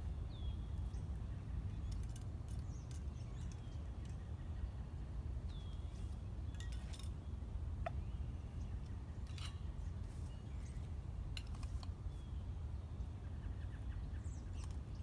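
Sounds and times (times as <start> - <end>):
faint bird chirp: 0.0 - 7.0.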